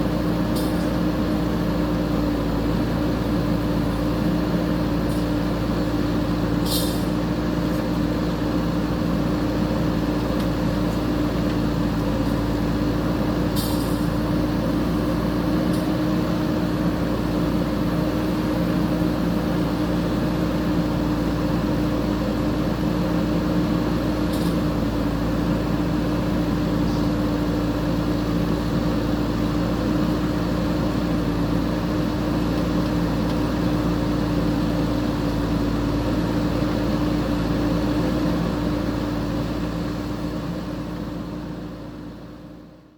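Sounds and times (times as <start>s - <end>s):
diesel engine running: 0.0s - 42.9s.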